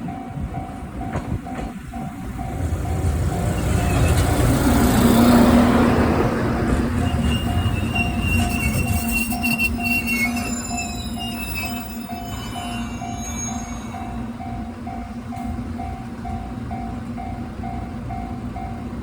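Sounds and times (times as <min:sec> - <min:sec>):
train rumble: 0:00.0 - 0:19.0
level-crossing alarm ringing: 0:06.6 - 0:18.9
faint wheel squeal: 0:06.7 - 0:14.3.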